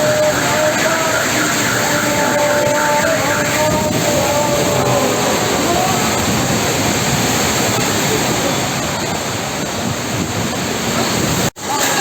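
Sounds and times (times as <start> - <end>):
heavy rain pouring: 0.0 - 12.0.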